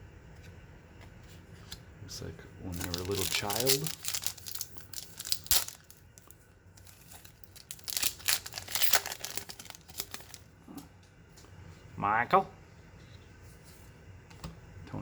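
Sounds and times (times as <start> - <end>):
card pack wrapper crinkling and tearing: 2.7 - 10.4
cards being handled: 2.7 - 10.4.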